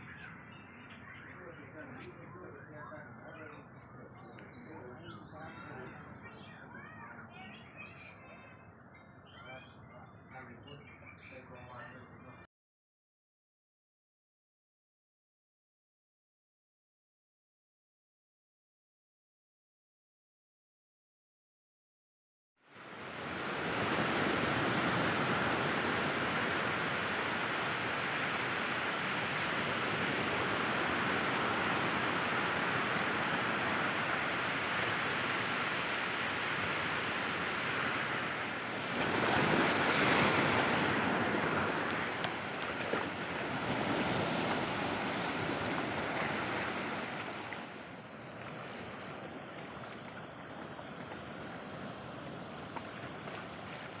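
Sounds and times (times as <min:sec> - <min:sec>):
wind: 0:00.0 - 0:12.5, 0:22.6 - 0:54.0
surf rushing: 0:22.7 - 0:54.0.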